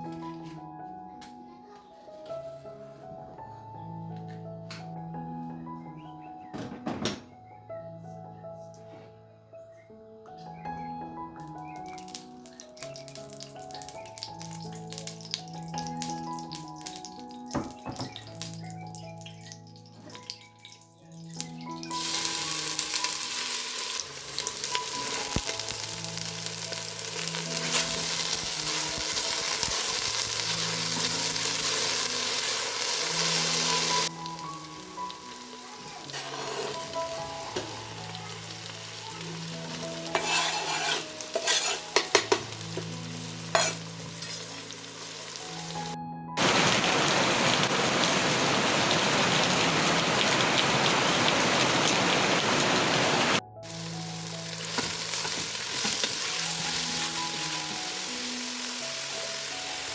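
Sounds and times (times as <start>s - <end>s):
soft sustained music notes: 7.5s - 46.8s
heavy rain falling: 46.4s - 53.4s.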